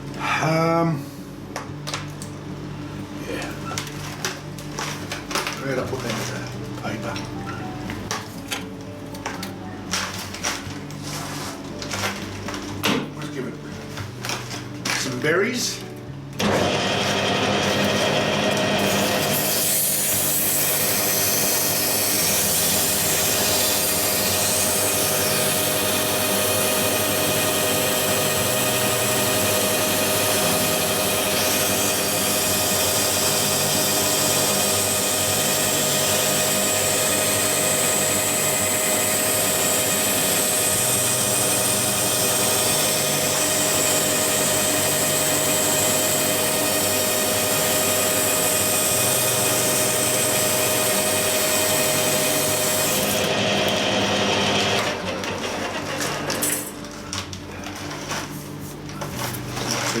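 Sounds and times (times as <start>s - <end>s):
metal lathe running: 16.4s - 56.6s.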